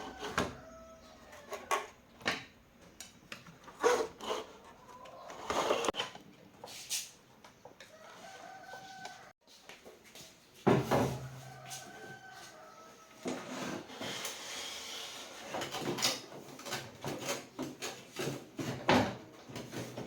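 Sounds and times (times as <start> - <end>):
rooster crowing: 0.0 - 1.8, 7.9 - 9.3, 11.2 - 13.5.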